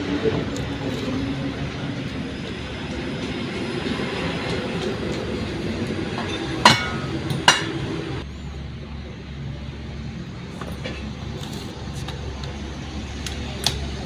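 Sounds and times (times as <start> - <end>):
workshop rumble: 0.0 - 14.0
hammer striking metal: 6.1 - 8.1.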